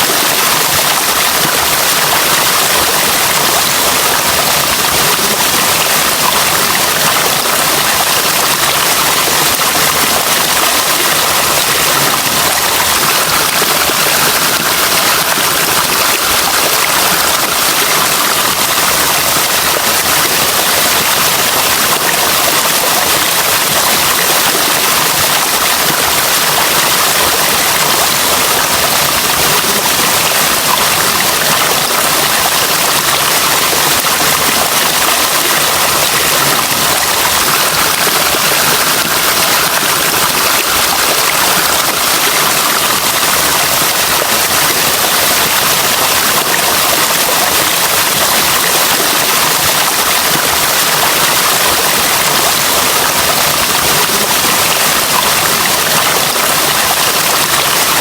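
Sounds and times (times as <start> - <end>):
running water rushing: 0.0 - 58.0.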